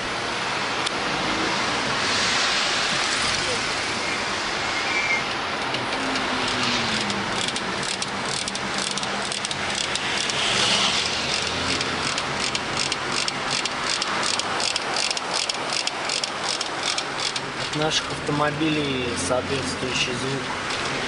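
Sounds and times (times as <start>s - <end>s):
car road noise: 0.0s - 21.0s
creaking clicking rattle of car body: 5.6s - 10.4s, 11.2s - 18.1s, 20.4s - 21.0s.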